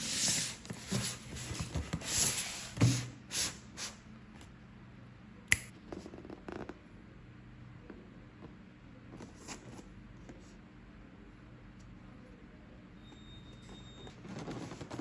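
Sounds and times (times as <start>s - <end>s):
sharp clicks and taps: 5.5s - 5.7s.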